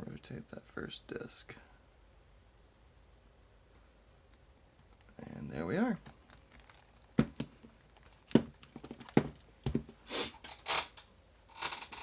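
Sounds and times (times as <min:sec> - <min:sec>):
short rushing hiss: 0:10.0 - 0:10.4.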